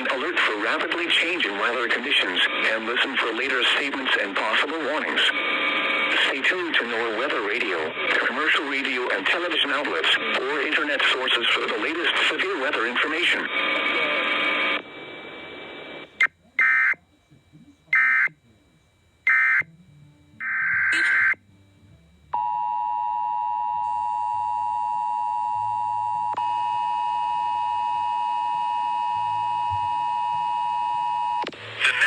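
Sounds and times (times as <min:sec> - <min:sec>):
digital data tone bursts: 0:16.2 - 0:17.1, 0:17.9 - 0:18.4, 0:19.2 - 0:19.7, 0:20.4 - 0:21.4
two-tone attention signal: 0:16.2 - 0:17.1, 0:17.9 - 0:18.4, 0:19.2 - 0:24.7.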